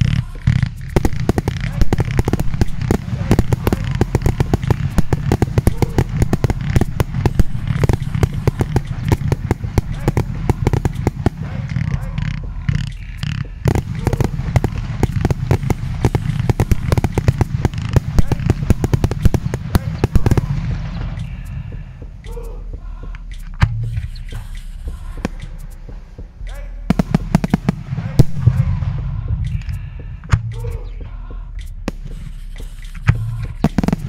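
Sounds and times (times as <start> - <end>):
firework bangs and crackles: 0.0 - 22.2, 26.9 - 29.6, 31.8 - 34.0
low rumble: 0.0 - 34.0.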